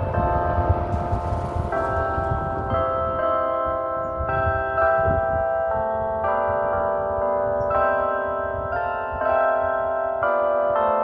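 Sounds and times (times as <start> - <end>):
low rumble: 0.0 - 4.4
church bells ringing: 0.0 - 11.0.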